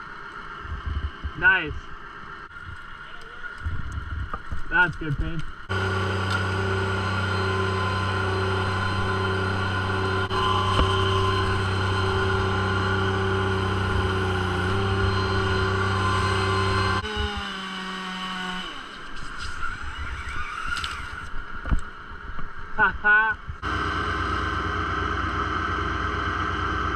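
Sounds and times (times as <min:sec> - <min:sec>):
engine running at high speed: 0:05.7 - 0:19.1, 0:23.6 - 0:26.9.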